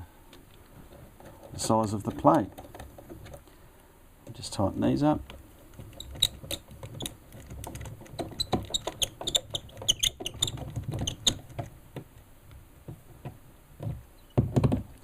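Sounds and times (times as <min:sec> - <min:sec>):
screwdriver squeaky clicks: 0:05.8 - 0:11.6.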